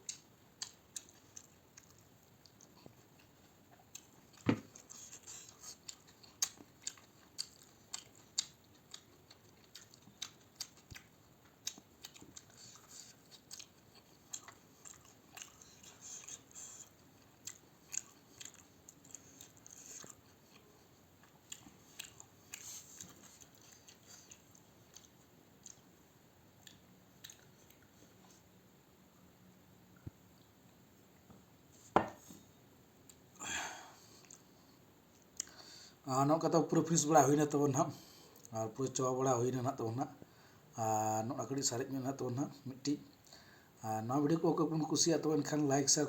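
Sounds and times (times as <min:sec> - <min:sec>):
person chewing food: 0:00.0 - 0:28.5, 0:34.0 - 0:35.8, 0:38.0 - 0:38.6
mouth smacks and soft crunches: 0:00.0 - 0:28.6, 0:34.1 - 0:35.6.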